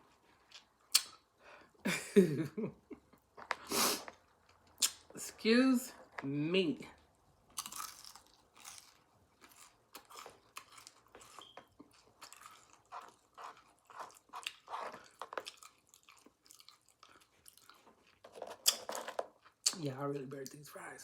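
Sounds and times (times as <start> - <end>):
person chewing with lip smacks: 0.1 - 1.3, 3.4 - 5.1, 7.6 - 19.8
small crunches: 7.5 - 19.7.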